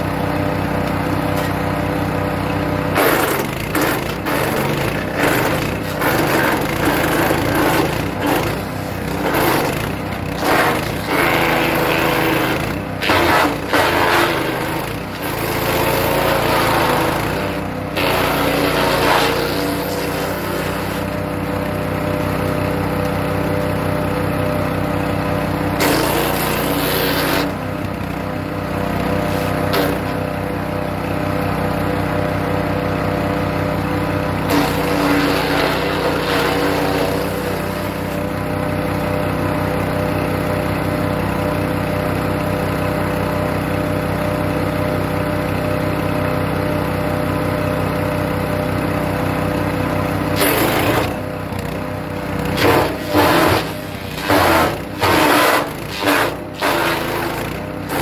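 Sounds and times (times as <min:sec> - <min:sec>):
wood chipper engine running: 0:00.0 - 0:58.0
branches being chipped: 0:52.6 - 0:58.0.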